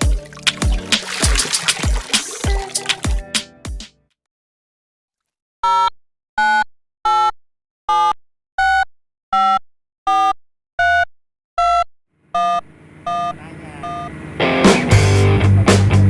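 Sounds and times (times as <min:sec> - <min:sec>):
short electronic beeps: 0:12.4 - 0:14.1.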